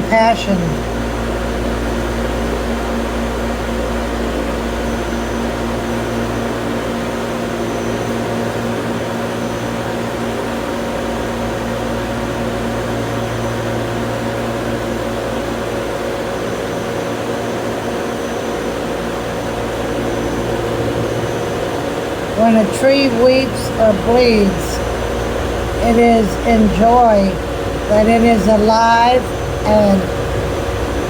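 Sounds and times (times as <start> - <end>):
air conditioning machinery humming: 0.0 - 31.0.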